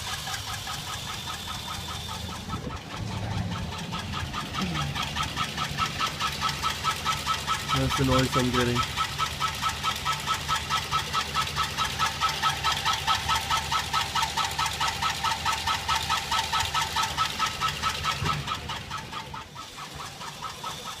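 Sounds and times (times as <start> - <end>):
engine idling with ticking knock: 0.0 - 21.0.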